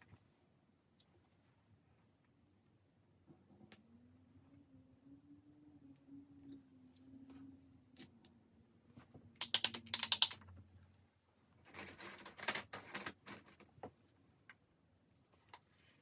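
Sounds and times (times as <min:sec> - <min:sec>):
objects clicking and rattling: 0:09.4 - 0:10.4.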